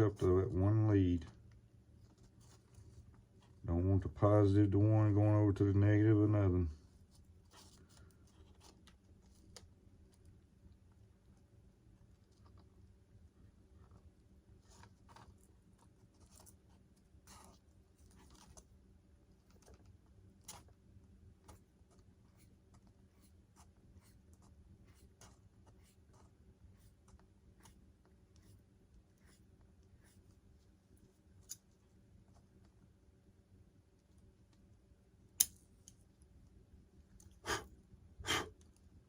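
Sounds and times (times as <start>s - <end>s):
low room hum: 0.0s - 39.0s
faint clicks of small parts handled: 7.4s - 10.3s, 30.9s - 32.8s, 35.3s - 36.5s.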